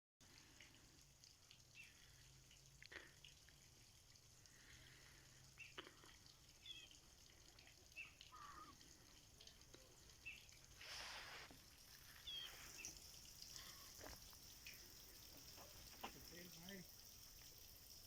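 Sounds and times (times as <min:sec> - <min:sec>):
faint bird chirps: 0:06.6 - 0:07.0, 0:07.9 - 0:08.8, 0:12.1 - 0:13.9
brief hiss: 0:10.8 - 0:11.6.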